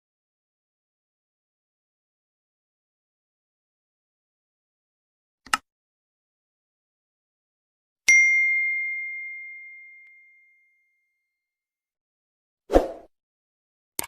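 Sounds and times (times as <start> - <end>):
notification bell ding: 8.1 - 10.8.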